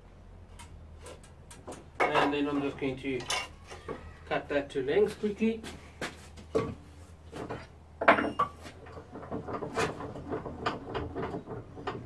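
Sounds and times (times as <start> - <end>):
board knocking and clattering: 6.4 - 12.0.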